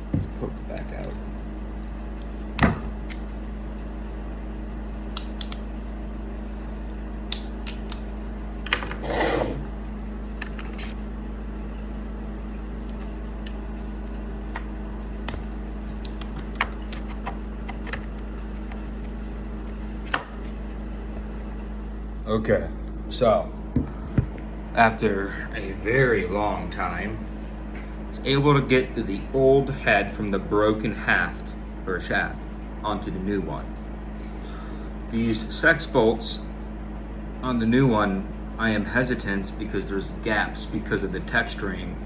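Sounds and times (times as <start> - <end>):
steady hum: 0.0 - 42.0.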